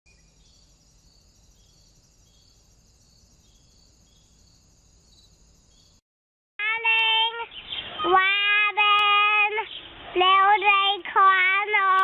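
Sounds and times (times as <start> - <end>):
insect chirring: 0.1 - 6.0.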